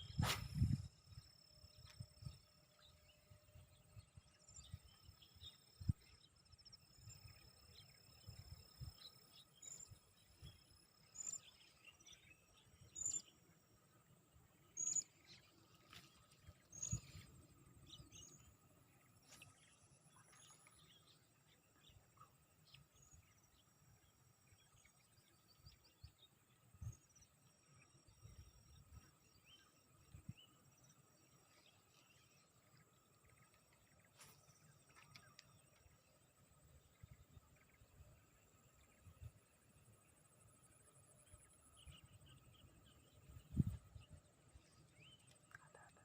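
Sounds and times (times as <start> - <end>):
bird chirping: 0.0 - 46.0.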